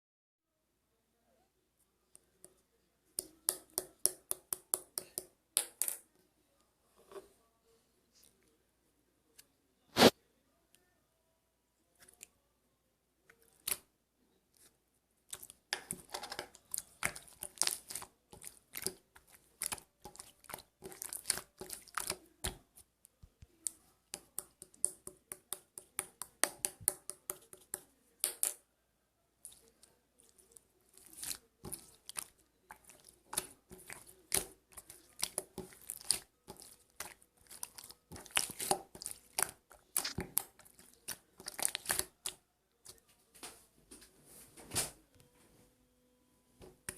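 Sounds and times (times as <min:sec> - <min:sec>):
slime squeezed by hand: 0:09.9 - 0:10.1.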